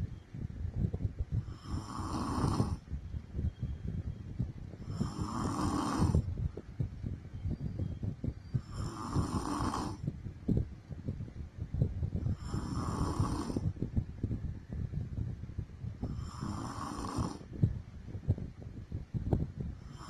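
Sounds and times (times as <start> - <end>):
woman snoring: 1.4 - 2.8, 4.8 - 6.3, 8.6 - 10.0, 12.3 - 13.8, 16.1 - 17.5.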